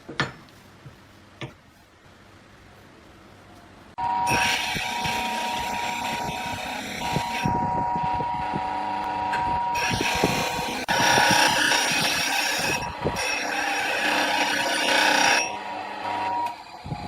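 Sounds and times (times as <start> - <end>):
wood lathe whining: 4.0 - 17.0.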